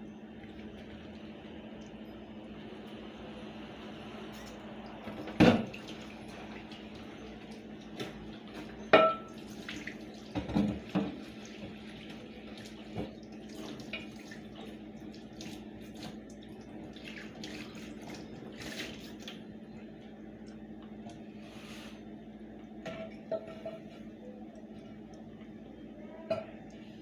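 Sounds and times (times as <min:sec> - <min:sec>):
water running into sink: 0:04.3 - 0:20.6
dishes knocking and clattering: 0:08.9 - 0:09.3, 0:10.3 - 0:11.2, 0:22.8 - 0:24.0, 0:26.3 - 0:26.6
steady low hum: 0:11.3 - 0:27.0.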